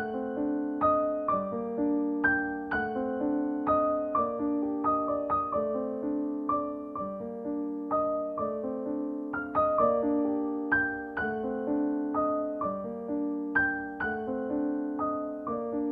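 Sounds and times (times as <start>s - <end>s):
gentle piano music: 0.0s - 15.9s.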